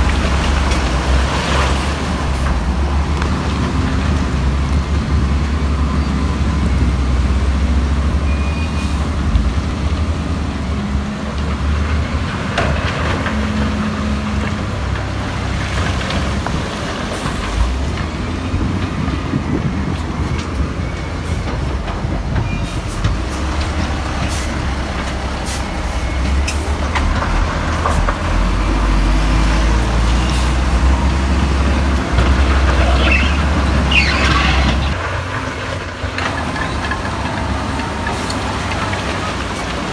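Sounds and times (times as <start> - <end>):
diesel machinery engine drone: 0.0 - 39.9
high squeal: 32.8 - 35.0.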